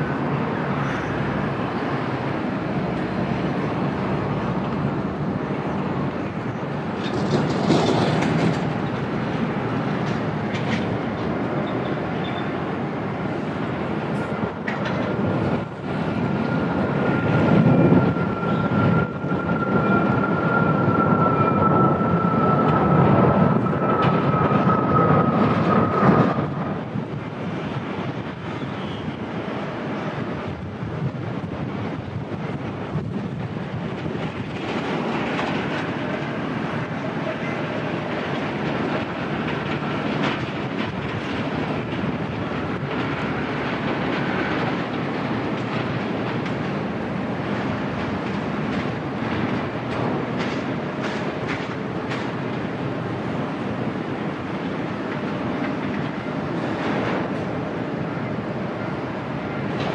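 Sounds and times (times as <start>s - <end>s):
jet engines whining: 1.6s - 31.0s.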